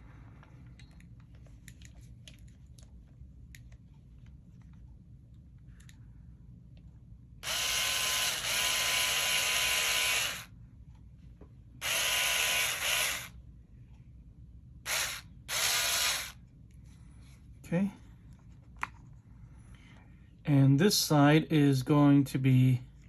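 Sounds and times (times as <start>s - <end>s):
electric screwdriver whirring: 7.4s - 10.5s, 11.8s - 13.3s, 14.9s - 16.4s.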